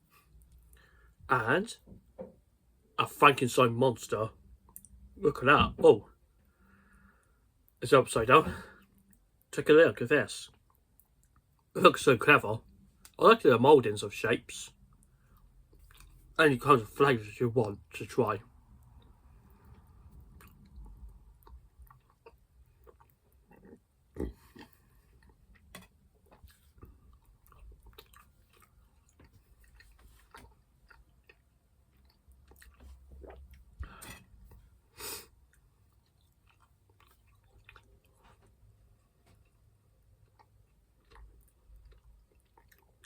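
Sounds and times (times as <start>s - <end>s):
person chewing gummy sweets: 18.7s - 34.4s, 35.4s - 43.0s.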